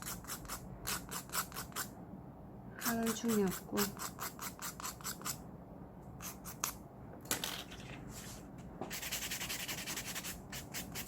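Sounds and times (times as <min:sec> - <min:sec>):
nail file scratching fingernail: 0:00.0 - 0:01.9, 0:02.8 - 0:05.4, 0:06.2 - 0:06.8, 0:08.9 - 0:11.0.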